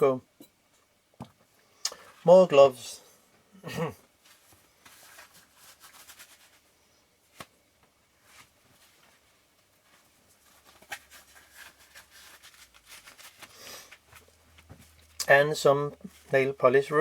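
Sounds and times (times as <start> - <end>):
rubber gloves rustling: 4.0 - 17.0.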